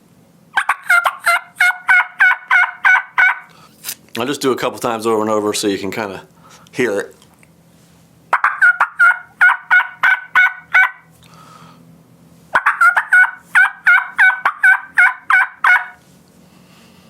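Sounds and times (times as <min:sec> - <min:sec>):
turkey call yelps: 0:00.6 - 0:03.6, 0:08.3 - 0:11.1, 0:12.5 - 0:16.0.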